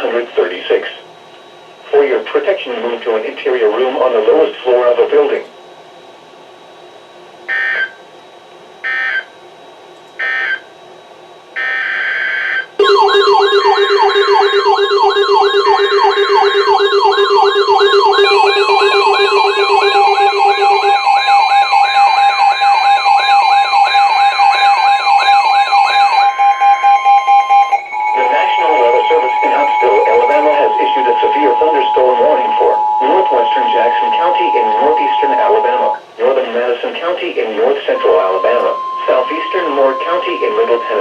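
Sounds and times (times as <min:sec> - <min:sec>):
steady high alarm tone: 0:07.5 - 0:08.0, 0:08.8 - 0:09.4, 0:10.2 - 0:10.7, 0:11.6 - 0:36.4, 0:37.4 - 0:41.0
warbling low alarm tone: 0:11.6 - 0:36.0, 0:37.8 - 0:41.0
buzzy data bursts: 0:12.8 - 0:22.6
rising whoop siren: 0:12.8 - 0:36.0.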